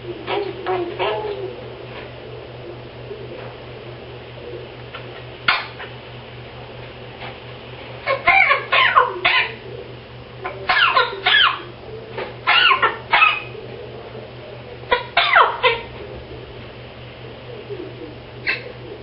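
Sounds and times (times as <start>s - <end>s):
parrot coughing: 8.0s - 9.6s, 10.4s - 11.7s, 12.4s - 13.5s, 14.9s - 15.9s, 18.4s - 18.7s.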